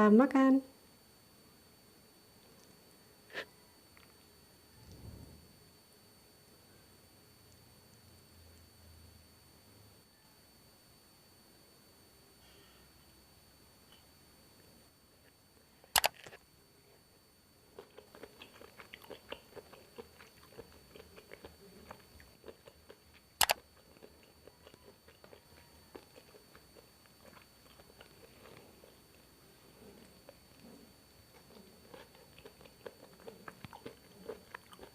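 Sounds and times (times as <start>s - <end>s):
chewing with crunches and wet clicks: 15.2s - 34.9s.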